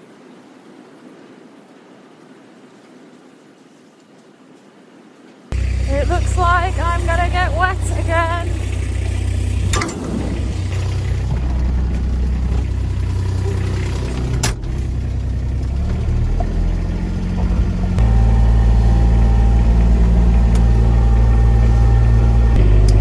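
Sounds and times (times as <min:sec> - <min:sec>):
vehicle engine running: 0:05.5 - 0:23.0.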